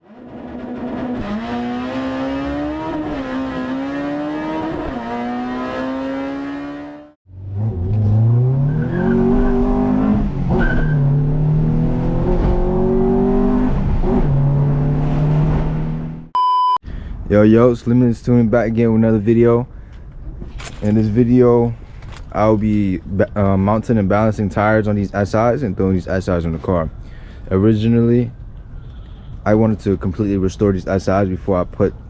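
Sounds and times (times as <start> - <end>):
car engine accelerating: 0.0 - 16.3.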